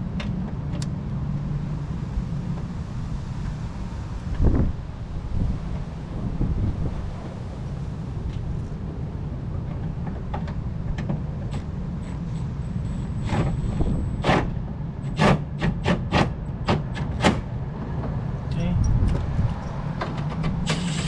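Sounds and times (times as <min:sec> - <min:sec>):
steady low rumble: 0:00.0 - 0:15.1.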